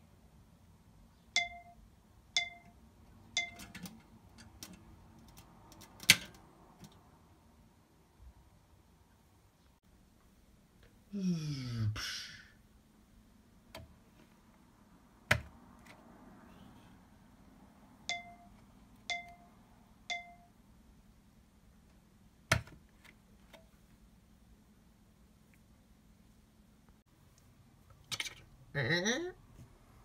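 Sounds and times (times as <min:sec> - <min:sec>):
short ringing dings: 0:01.4 - 0:01.8, 0:02.4 - 0:02.8, 0:03.4 - 0:03.8, 0:18.1 - 0:20.6.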